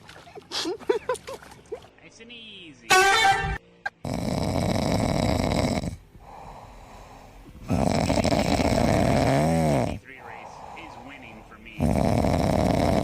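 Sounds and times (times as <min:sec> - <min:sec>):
loud rattling snoring: 0:04.0 - 0:13.0.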